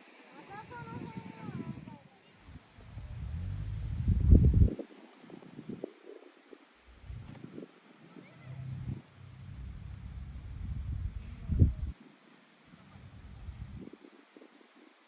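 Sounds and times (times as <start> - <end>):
crickets chirping: 0.6 - 4.8, 6.5 - 12.0, 12.6 - 14.5
low rumbling thuds: 2.5 - 4.7, 6.9 - 7.5, 8.4 - 11.9, 12.8 - 13.8.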